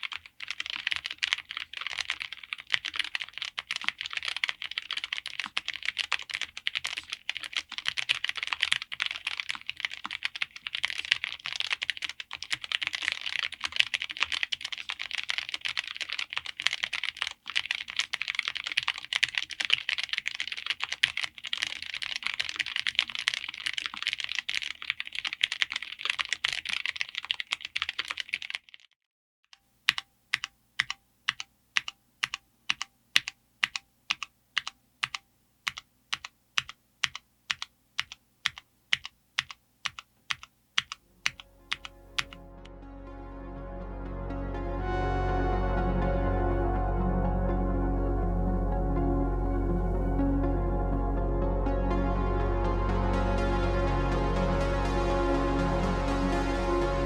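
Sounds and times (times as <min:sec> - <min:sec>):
mechanical keyboard typing: 0:00.0 - 0:28.9, 0:29.9 - 0:42.4.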